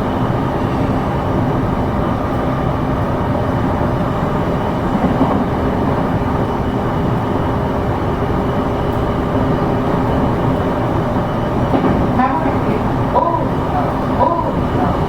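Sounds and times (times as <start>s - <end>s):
train wheels rumbling on rails: 0.0s - 15.0s.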